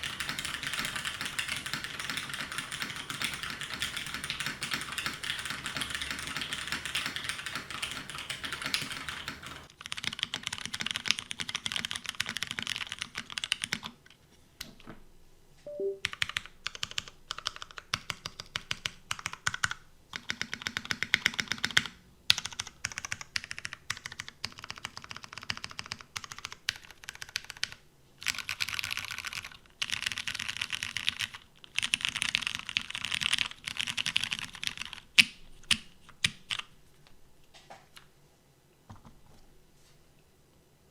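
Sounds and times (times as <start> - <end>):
mechanical keyboard typing: 0.0 - 14.0, 15.7 - 36.7.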